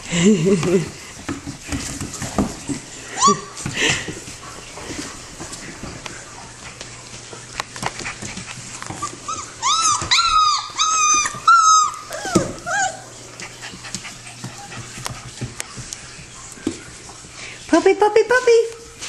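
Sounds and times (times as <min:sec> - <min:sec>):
puppy whining: 0:03.0 - 0:03.6, 0:08.2 - 0:15.7
puppy whimpering: 0:03.1 - 0:03.6, 0:08.9 - 0:14.9.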